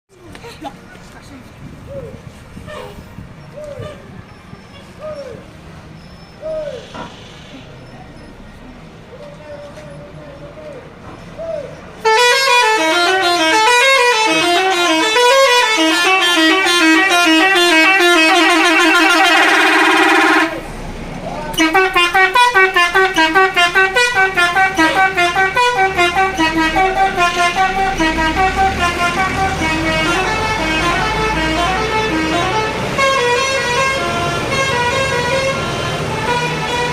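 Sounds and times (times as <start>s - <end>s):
low engine rumble: 0.1s - 36.9s
musical bus horn playing tune: 12.0s - 20.8s, 21.5s - 36.9s.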